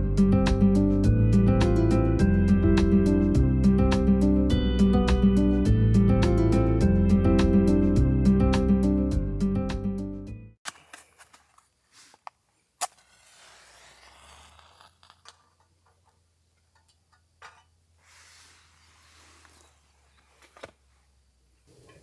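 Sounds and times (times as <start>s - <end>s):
guitar music: 0.0s - 10.1s
faint rustling: 10.7s - 22.0s.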